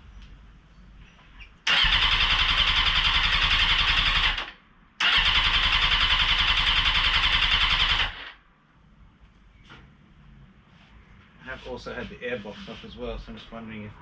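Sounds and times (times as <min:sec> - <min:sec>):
electric starter cranking engine: 0:01.7 - 0:08.3.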